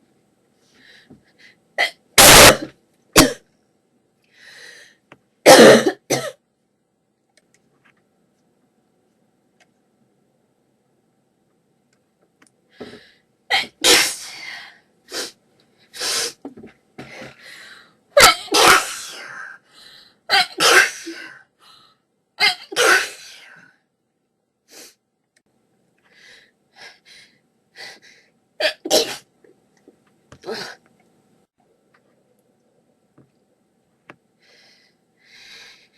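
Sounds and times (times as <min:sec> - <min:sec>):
person sneezing: 0:01.8 - 0:03.4, 0:18.2 - 0:19.4
faint breaths: 0:04.2 - 0:05.1, 0:34.4 - 0:35.9.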